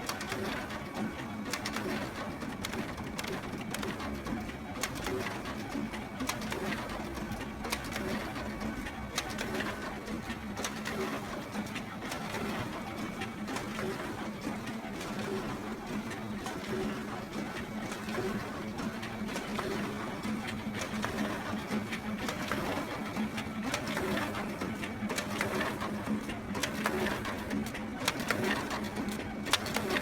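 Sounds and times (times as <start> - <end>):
photocopier click and whir: 0.0 - 30.0
photocopier motor hum: 1.6 - 30.0.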